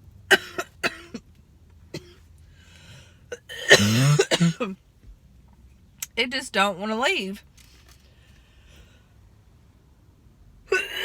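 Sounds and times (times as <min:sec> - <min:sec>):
woman coughing: 0:00.3 - 0:01.2, 0:03.3 - 0:04.8, 0:10.7 - 0:11.0.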